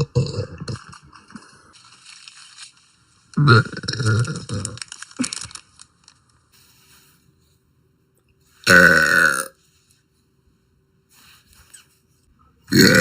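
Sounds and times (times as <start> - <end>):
girl burping: 0.0 - 0.7, 8.7 - 9.5.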